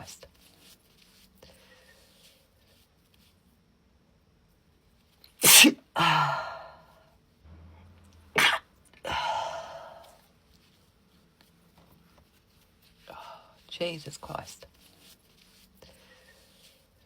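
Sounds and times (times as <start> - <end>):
woman sneezing: 5.4 - 6.7, 8.4 - 10.0.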